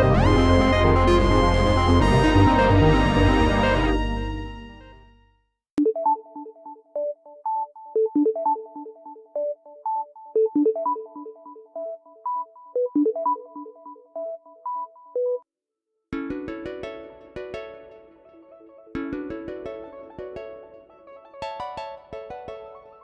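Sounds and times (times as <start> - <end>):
synthesized ringtone melody: 0.0 - 4.8, 5.8 - 15.4.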